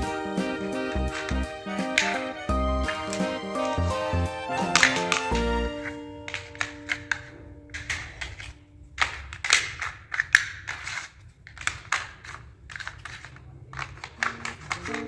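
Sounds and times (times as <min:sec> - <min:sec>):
plastic toy food clicking: 0:01.1 - 0:02.2, 0:04.6 - 0:15.0.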